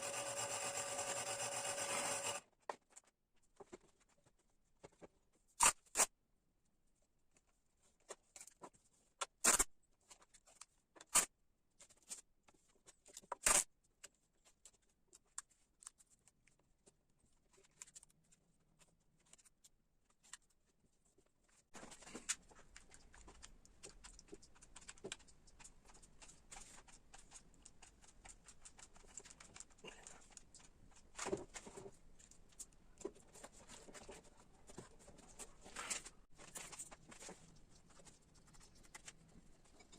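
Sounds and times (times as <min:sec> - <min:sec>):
carving tools cutting wood: 0:00.0 - 0:02.5.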